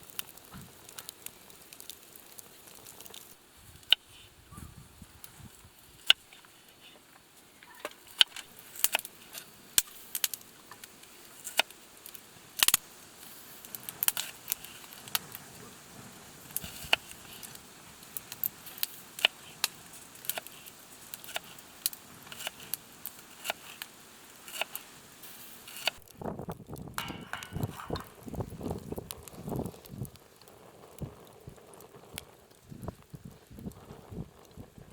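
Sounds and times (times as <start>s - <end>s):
faint hiss: 0.0s - 26.1s
campfire crackling and popping: 0.0s - 34.9s.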